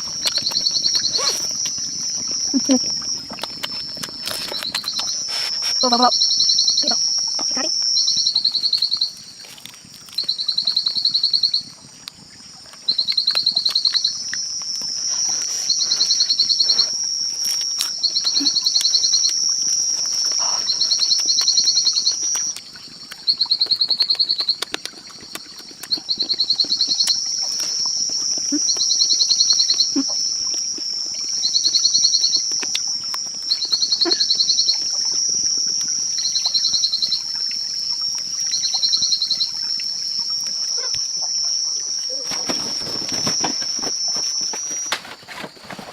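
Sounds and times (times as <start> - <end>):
high-pitched insect drone: 0.0 - 9.5, 10.2 - 23.6, 26.1 - 45.3
insect pulsed trill: 0.0 - 45.9.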